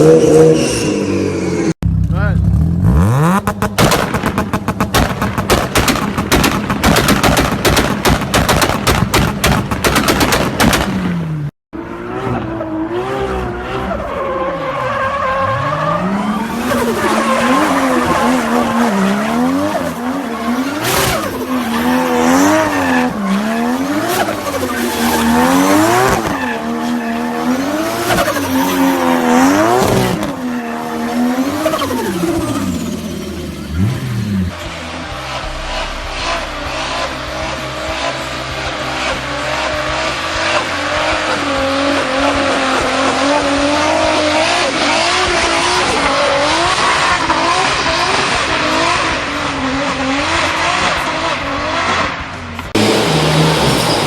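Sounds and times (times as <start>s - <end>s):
car engine revving: 0.0s - 54.0s
exhaust pops and bangs: 3.4s - 11.5s.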